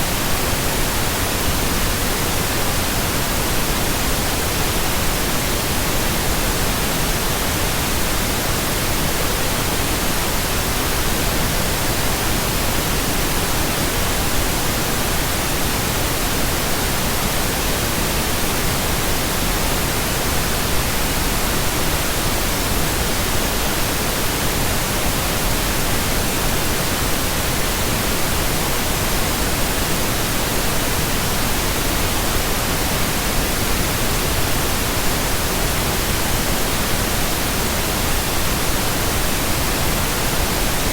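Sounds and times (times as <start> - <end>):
steady pink noise hiss: 0.0 - 40.9.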